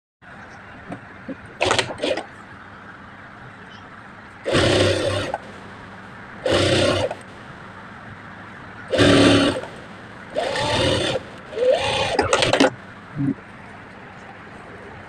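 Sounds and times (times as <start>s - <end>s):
sewing machine stitching: 4.5s - 5.4s, 6.4s - 7.2s, 8.9s - 9.7s, 10.4s - 12.7s.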